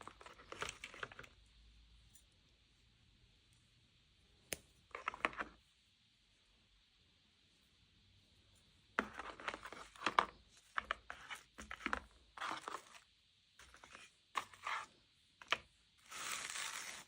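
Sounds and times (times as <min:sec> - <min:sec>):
packaging crinkling and tearing: 0:16.0 - 0:17.0.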